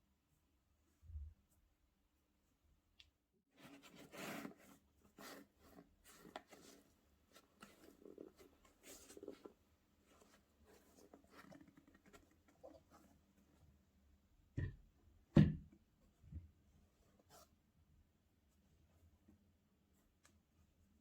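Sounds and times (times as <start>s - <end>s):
rustling of box and paper: 3.6s - 12.9s.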